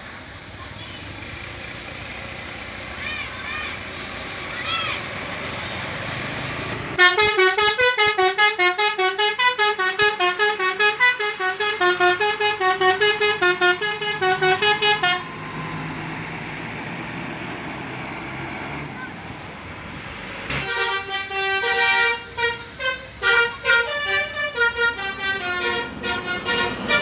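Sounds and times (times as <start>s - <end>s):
bus musical horn melody: 7.0s - 15.6s, 20.5s - 27.0s.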